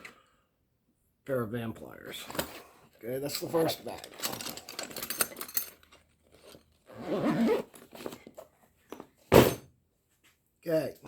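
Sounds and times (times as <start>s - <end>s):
tool bags rustling: 2.2s - 9.6s
tools clinking: 3.2s - 6.8s.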